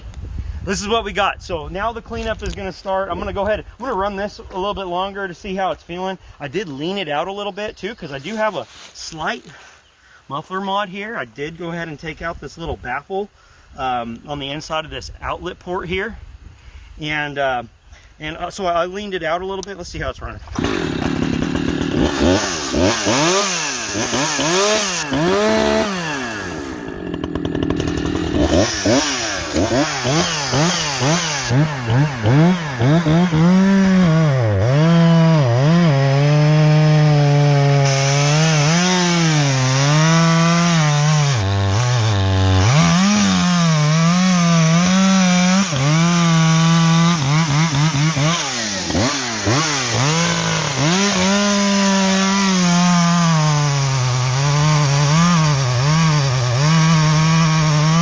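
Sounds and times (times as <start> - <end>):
chainsaw revving: 20.4 - 58.0.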